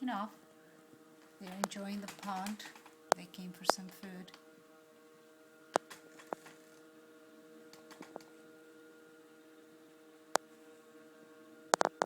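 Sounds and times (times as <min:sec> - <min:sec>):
electrical hum: 0:00.0 - 0:12.0
sharp clicks: 0:01.4 - 0:04.4, 0:05.8 - 0:06.6, 0:07.7 - 0:08.3.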